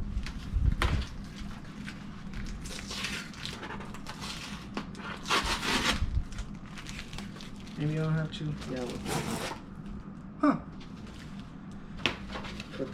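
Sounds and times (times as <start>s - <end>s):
cardboard ripping: 2.4s - 7.4s, 8.6s - 9.6s
cardboard rubbing and scraping: 2.8s - 6.1s, 8.6s - 9.6s.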